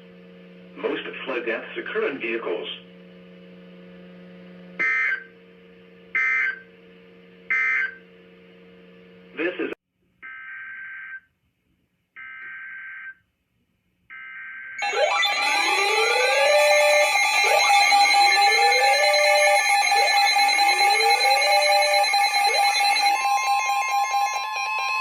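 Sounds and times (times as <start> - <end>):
steady alarm tones with rising whoop: 14.8 - 25.0
steady tone: 14.8 - 25.0.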